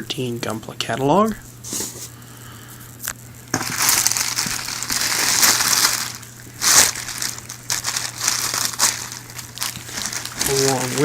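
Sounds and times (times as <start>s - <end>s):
packing material rustling: 3.5s - 11.0s.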